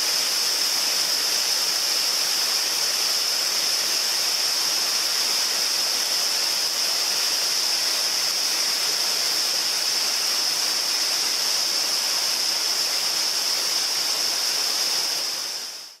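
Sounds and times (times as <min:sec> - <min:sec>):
high-pitched hiss: 0:00.0 - 0:16.0
waterfall rushing: 0:00.0 - 0:16.0.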